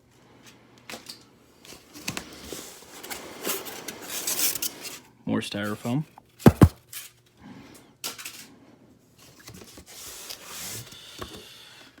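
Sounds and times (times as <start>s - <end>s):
sharp knocks: 6.5s - 6.8s
styrofoam and cardboard rubbing: 6.5s - 6.8s.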